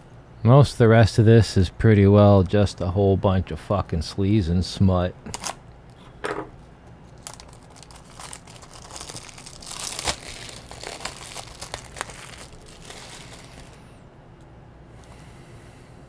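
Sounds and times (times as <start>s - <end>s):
packaging crinkling and tearing: 5.2s - 6.0s, 6.9s - 13.9s.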